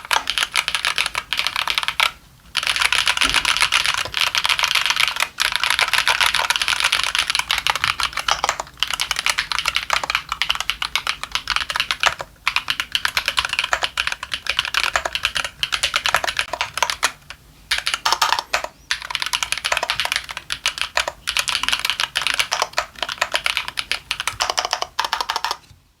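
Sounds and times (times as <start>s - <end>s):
fast typing on mechanical keyboard: 0.0s - 25.7s.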